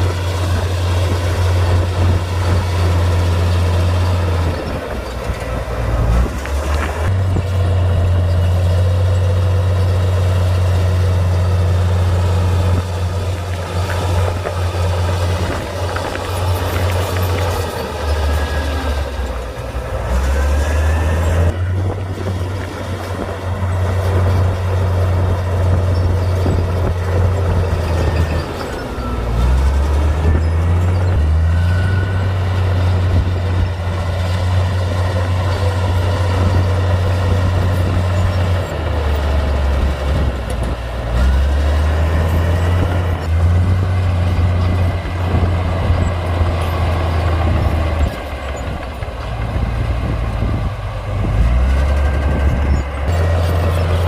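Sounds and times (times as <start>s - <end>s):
bulldozer diesel engine under load: 0.0s - 54.0s
faint high squeals: 27.8s - 32.6s.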